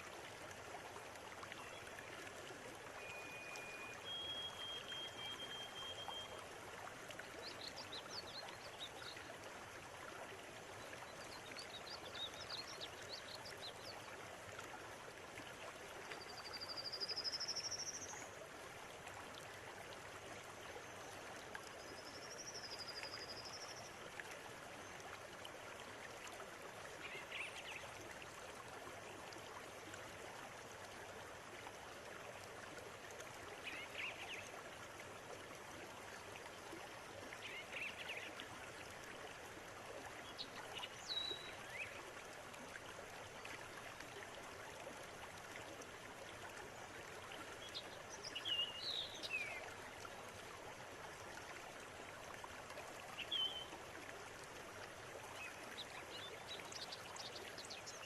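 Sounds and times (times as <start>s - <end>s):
river water flowing: 0.0s - 58.0s
bird whistling: 3.1s - 6.0s.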